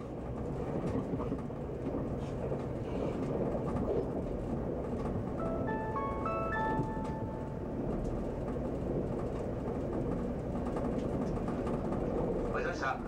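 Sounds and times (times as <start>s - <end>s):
train wheels rumbling on rail: 0.0s - 13.0s
conductor's chime: 5.4s - 8.0s.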